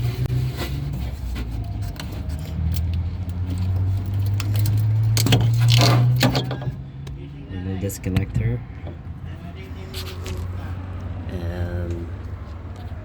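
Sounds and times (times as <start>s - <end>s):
metal parts clinking and rattling: 2.0s - 6.8s.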